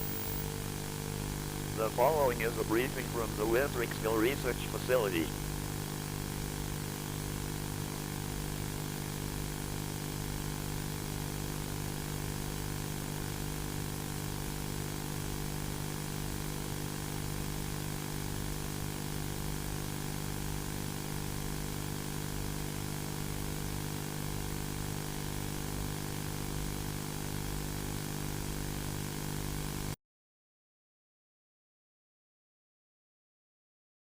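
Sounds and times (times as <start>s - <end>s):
steady droning hum: 0.0s - 0.6s, 1.7s - 5.5s.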